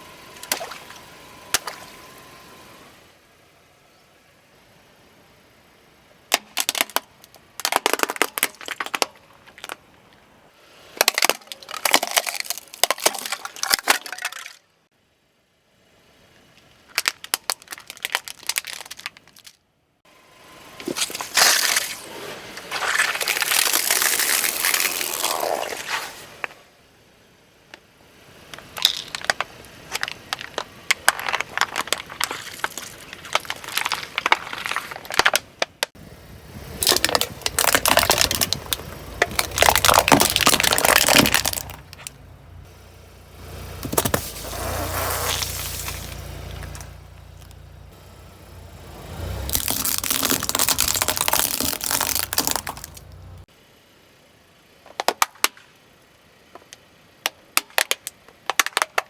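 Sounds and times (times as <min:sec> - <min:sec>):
car low rumble: 0:00.0 - 0:14.3, 0:15.0 - 0:58.6
tyre crushing crunchy objects: 0:06.3 - 0:10.1, 0:11.0 - 0:14.6, 0:16.9 - 0:19.6, 0:20.8 - 0:26.4, 0:28.5 - 0:42.7, 0:43.3 - 0:53.4.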